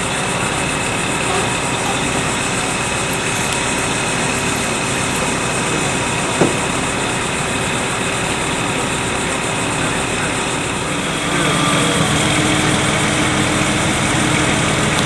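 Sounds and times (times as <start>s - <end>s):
heavy equipment engine idling: 0.0s - 15.0s
short sharp knock: 6.4s - 6.7s.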